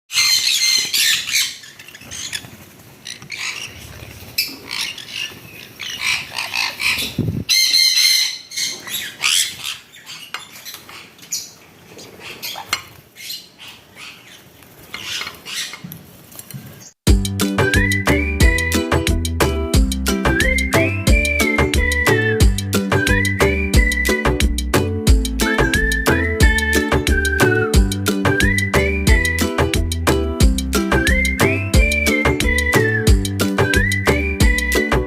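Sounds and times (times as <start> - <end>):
parrots squawking: 0.1 - 15.9.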